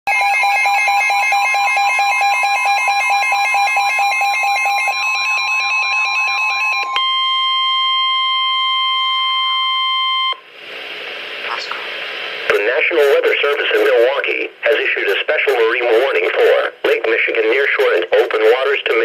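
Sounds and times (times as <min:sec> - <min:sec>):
steady high alert tone: 0:00.9 - 0:08.4.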